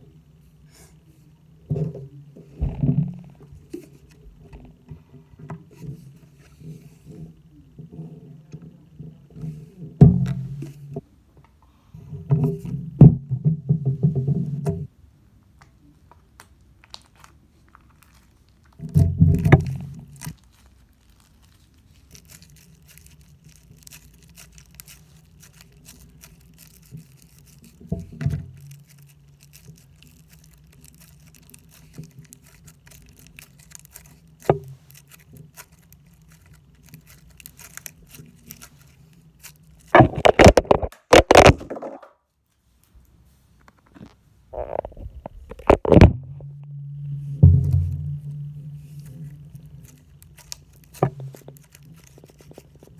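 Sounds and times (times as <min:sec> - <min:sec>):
slime crackling by hand: 0:16.1 - 0:41.5, 0:44.6 - 0:52.9
low hum: 0:45.0 - 0:52.9.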